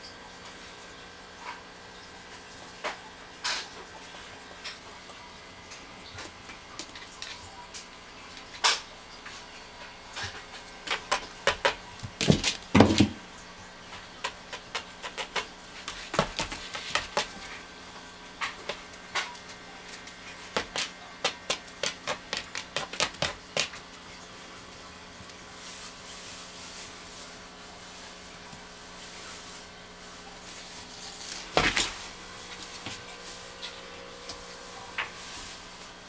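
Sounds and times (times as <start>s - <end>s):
cat playing clicks and taps: 14.2s - 17.5s, 20.0s - 23.9s.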